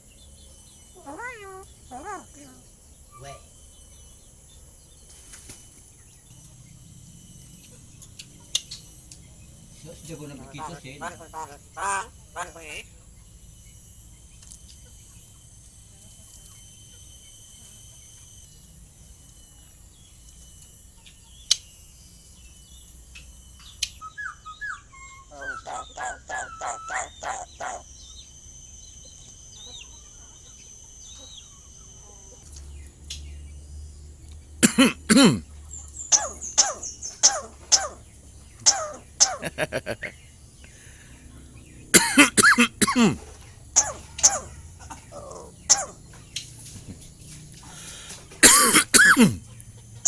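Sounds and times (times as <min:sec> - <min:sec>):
starling calling: 0:01.0 - 0:02.7, 0:10.6 - 0:12.8, 0:24.2 - 0:27.9, 0:36.1 - 0:38.0, 0:38.6 - 0:40.1, 0:45.2 - 0:46.0.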